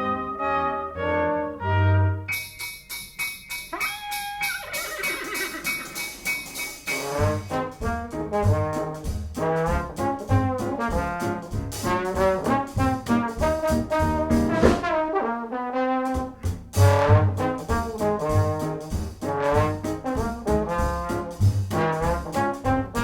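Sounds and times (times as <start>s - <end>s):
brass holiday music with beat: 0.0s - 23.0s
bass line: 7.2s - 15.1s, 16.2s - 23.0s.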